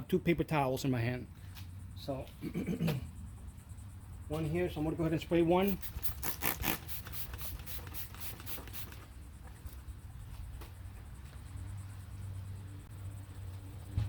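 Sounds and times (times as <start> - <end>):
spray bottle squirting: 5.7 - 9.0.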